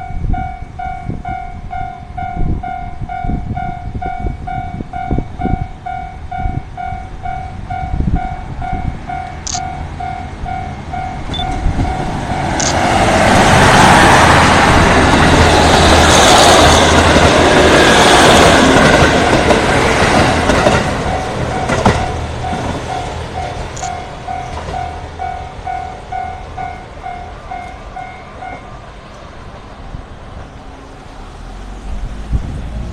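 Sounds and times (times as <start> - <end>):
railroad crossing bell ringing: 0.0 - 15.1, 20.6 - 28.9
train passing with wheel noise: 0.0 - 32.9.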